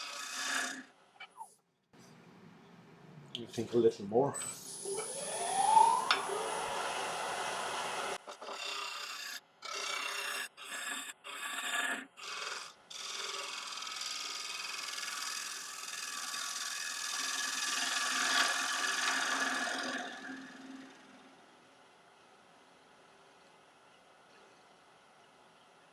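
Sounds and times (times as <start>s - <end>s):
gouge shaving wood on lathe: 0.0s - 0.9s, 5.8s - 21.3s.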